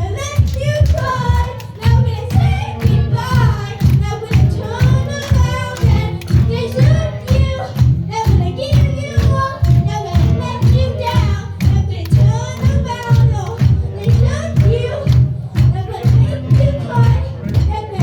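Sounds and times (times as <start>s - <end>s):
song with steady beat and singing: 0.0s - 18.0s.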